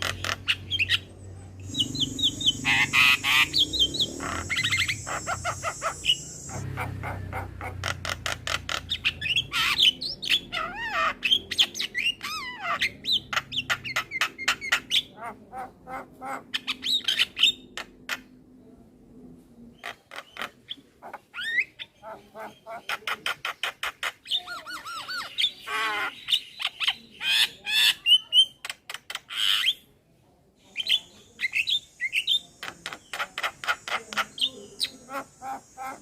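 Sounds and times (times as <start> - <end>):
myna calling: 0.0 - 16.8, 31.4 - 36.0
harsh rasping squawk: 0.0 - 17.6.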